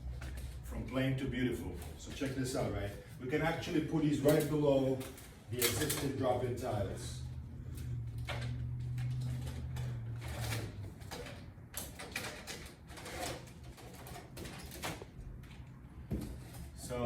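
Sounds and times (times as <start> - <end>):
ceiling tile rustles and knocks: 8.2 - 16.9.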